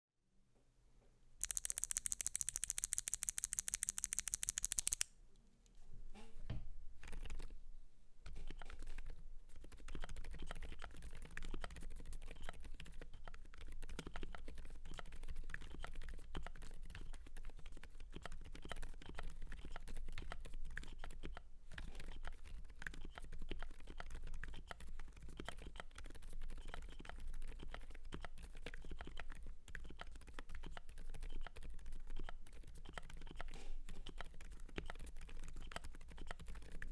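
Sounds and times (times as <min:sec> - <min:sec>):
fast even sharp clicks: 0:01.4 - 0:05.1
typing on muted mechanical keyboard: 0:01.4 - 0:05.1, 0:08.5 - 0:21.4, 0:22.1 - 0:36.9.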